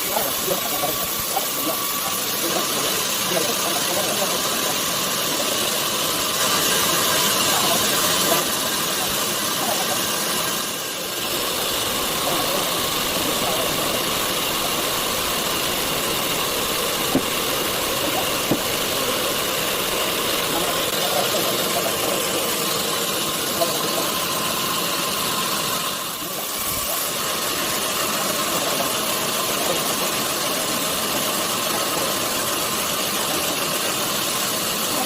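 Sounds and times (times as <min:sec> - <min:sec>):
sawmill machinery running: 0:00.0 - 0:35.0.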